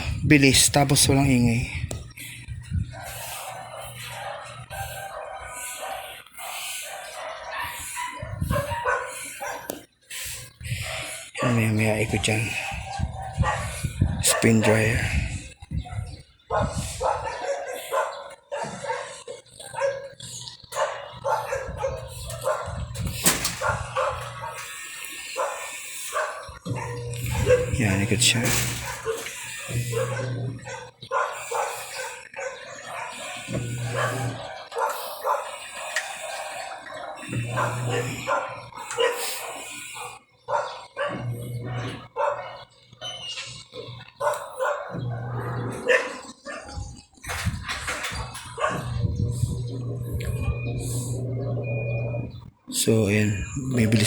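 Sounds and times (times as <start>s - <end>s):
dog barking: 2.9s - 14.9s, 15.8s - 46.8s, 48.1s - 50.8s
washing machine spinning hum: 20.8s - 31.9s, 32.9s - 34.6s, 37.1s - 39.1s, 44.7s - 46.0s, 47.5s - 54.0s.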